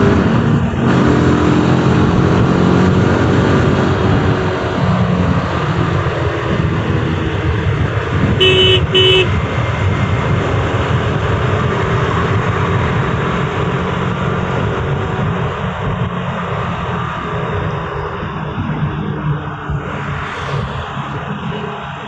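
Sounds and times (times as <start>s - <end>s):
road traffic rumble: 0.0s - 22.0s
vehicle horn beeps: 8.4s - 9.4s.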